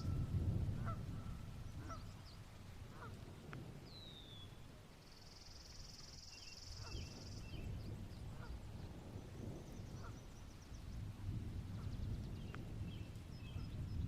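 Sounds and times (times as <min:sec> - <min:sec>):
steady low rumble: 0:00.0 - 0:04.1.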